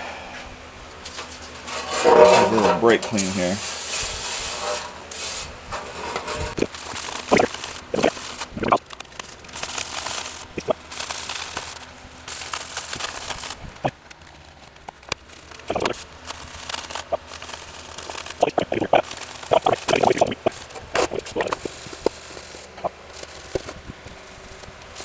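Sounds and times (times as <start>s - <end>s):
metal pan knocks and rubbing: 1.6s - 3.4s.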